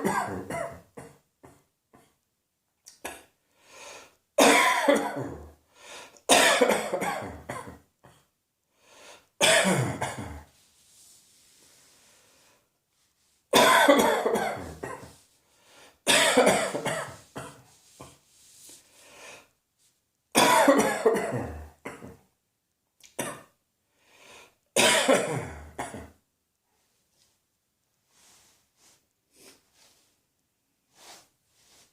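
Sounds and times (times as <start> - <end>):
person coughing: 0.0 - 2.1, 4.4 - 5.5, 6.3 - 8.2, 9.4 - 10.5, 13.6 - 15.2, 16.1 - 17.6, 20.4 - 22.2, 24.8 - 26.2.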